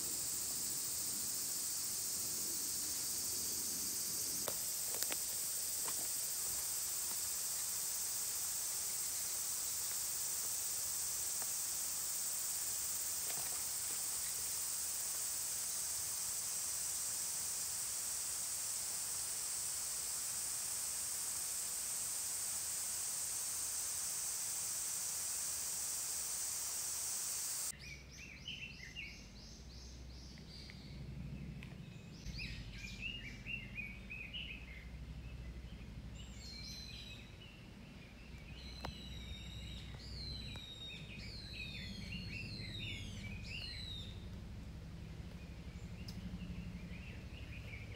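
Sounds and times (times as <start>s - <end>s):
high-pitched insect chorus: 0.0s - 27.8s, 38.3s - 47.9s.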